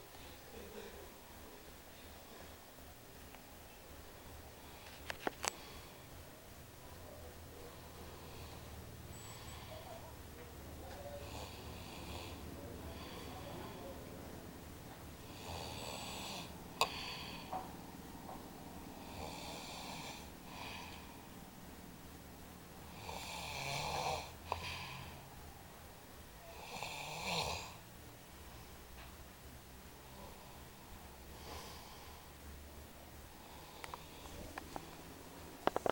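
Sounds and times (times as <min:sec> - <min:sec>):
man snoring: 0:11.0 - 0:13.9, 0:15.2 - 0:17.5, 0:19.0 - 0:21.2, 0:22.8 - 0:25.2, 0:26.4 - 0:27.8, 0:33.4 - 0:34.6.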